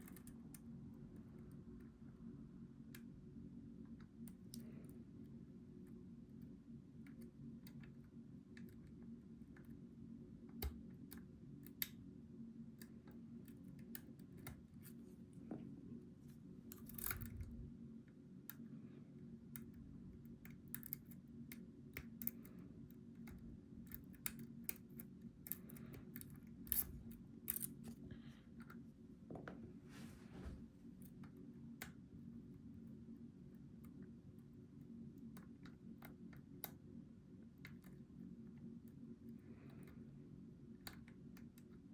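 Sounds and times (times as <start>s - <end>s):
steady low hum: 0.0s - 41.9s
lock pick metallic clicks: 16.7s - 17.5s, 20.5s - 21.2s, 23.2s - 27.8s.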